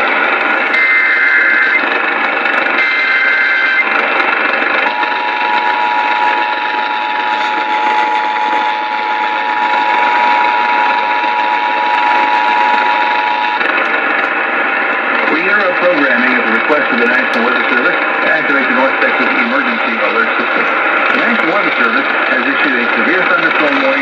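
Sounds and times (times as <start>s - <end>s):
radio hiss and static: 0.0s - 24.0s
steady dual alert tone: 0.7s - 1.9s, 2.7s - 4.0s, 4.6s - 13.7s.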